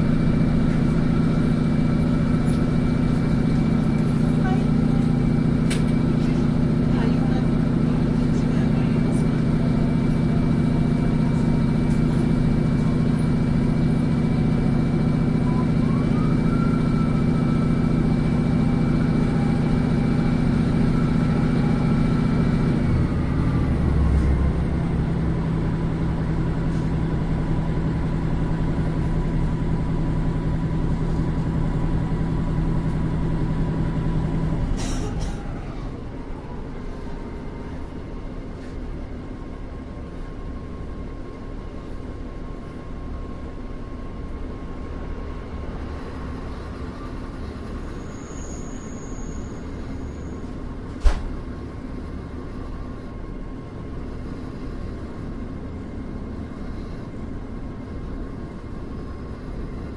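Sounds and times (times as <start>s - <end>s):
light train rumble: 0.0s - 59.9s
train interior hum: 0.0s - 59.9s
click: 5.7s - 6.0s.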